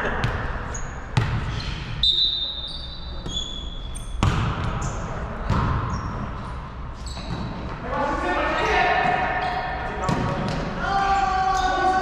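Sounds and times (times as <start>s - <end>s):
sneaker squeaks on court: 0.2s - 7.8s
volleyball thumps: 4.2s - 4.8s.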